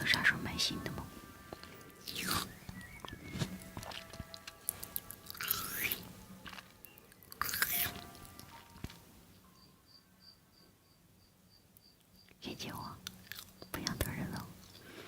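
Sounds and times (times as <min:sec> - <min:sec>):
soft background music: 0:00.0 - 0:15.0
person chewing and crunching food: 0:00.8 - 0:09.2, 0:13.0 - 0:15.0.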